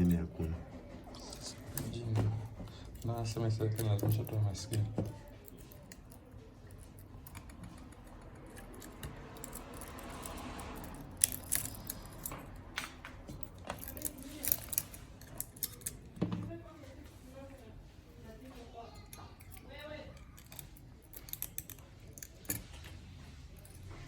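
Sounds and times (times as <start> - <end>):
hand tools clicking and clinking: 0.0 - 16.6, 19.0 - 24.0.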